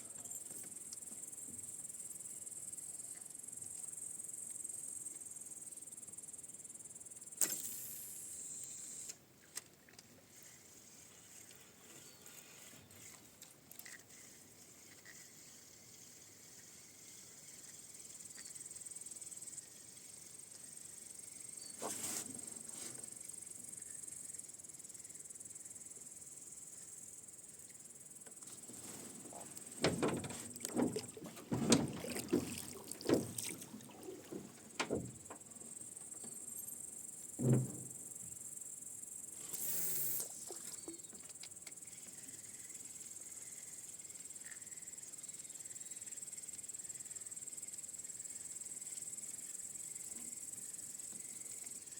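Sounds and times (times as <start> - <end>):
insects chirring: 0.0 - 51.9
oars knocking and splashing: 29.2 - 35.5
thump: 29.7 - 33.6, 34.3 - 35.4, 37.4 - 38.0.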